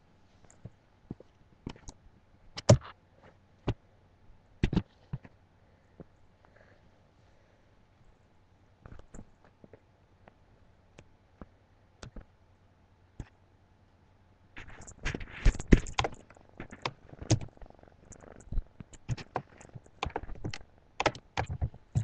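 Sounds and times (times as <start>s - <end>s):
rustles: 14.6s - 20.6s
kitten purring: 14.6s - 22.0s
sharp clicks and knocks: 14.6s - 22.0s.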